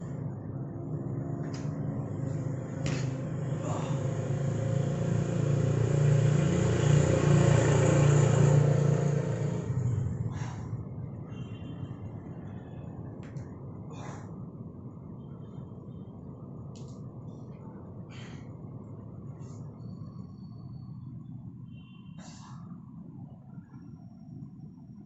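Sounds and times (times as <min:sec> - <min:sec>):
vehicle passing by: 0:00.0 - 0:10.7.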